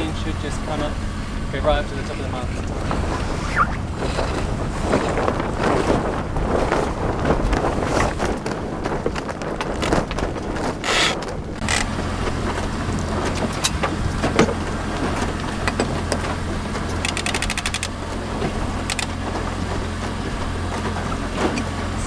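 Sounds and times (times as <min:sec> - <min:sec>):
low engine hum: 0:00.0 - 0:22.0
wind: 0:00.0 - 0:22.0
ratchet clicks: 0:09.8 - 0:10.0, 0:10.8 - 0:11.9, 0:17.0 - 0:17.9, 0:18.9 - 0:19.1
sharp clicks: 0:10.8 - 0:11.9, 0:17.0 - 0:17.9, 0:18.9 - 0:19.1.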